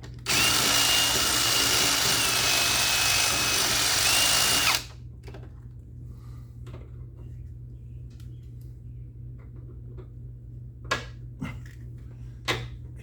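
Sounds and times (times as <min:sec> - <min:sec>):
electric drill whining in steel: 0:00.2 - 0:04.9.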